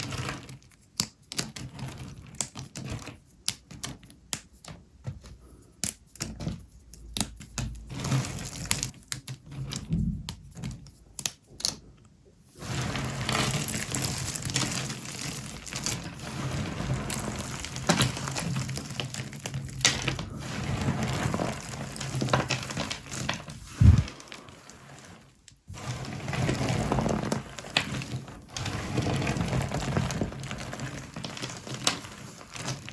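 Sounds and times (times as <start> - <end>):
crisp soap crackling and crunching: 12.8 - 32.9.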